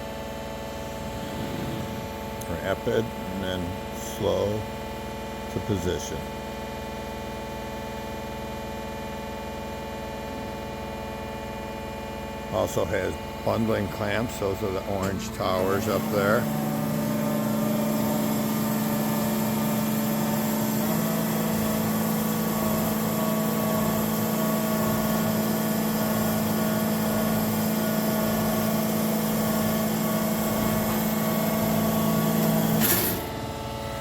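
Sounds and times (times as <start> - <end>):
low machine tone: 0.0 - 34.0
bandsaw machine hum: 0.2 - 5.0, 12.1 - 34.0.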